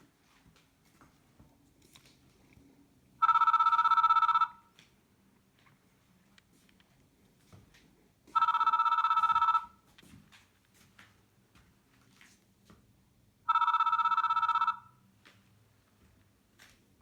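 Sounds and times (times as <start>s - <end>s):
trilling two-tone phone ringtone: 3.2s - 4.7s, 8.4s - 9.8s, 13.5s - 15.0s.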